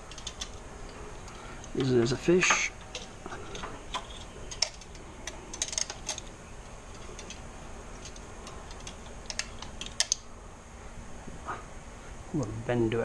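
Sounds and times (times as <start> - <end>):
wire hook clicking on metal frame: 0.0 - 6.3, 8.0 - 10.3.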